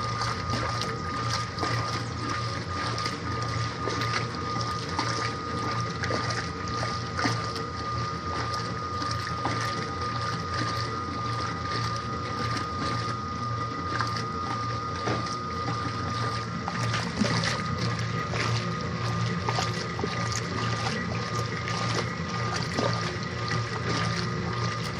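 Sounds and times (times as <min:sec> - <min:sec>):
washing machine motor hum: 0:00.0 - 0:24.9
water sloshing: 0:00.0 - 0:24.9.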